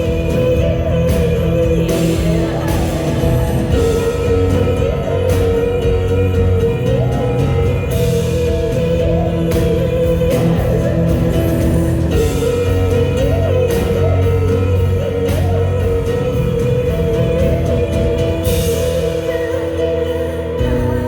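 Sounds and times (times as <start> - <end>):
bass line: 0.0 - 21.0
live band music: 0.0 - 21.0
woman singing: 0.0 - 21.0.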